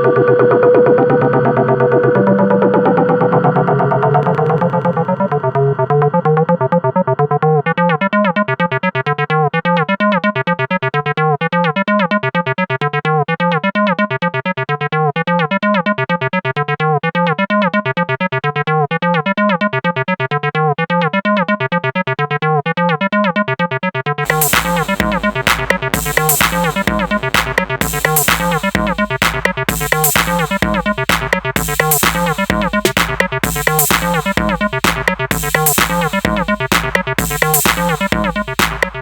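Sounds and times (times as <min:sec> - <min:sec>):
synthesizer music: 0:00.0 - 0:08.9, 0:24.2 - 0:39.0
pulsing bass: 0:00.0 - 0:21.5, 0:24.1 - 0:39.0
loud noisy drums: 0:24.2 - 0:39.0.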